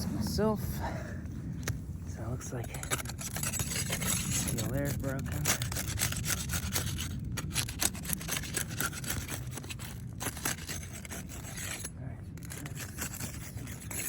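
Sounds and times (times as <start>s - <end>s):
scraping on roof shingles: 2.9s - 14.0s.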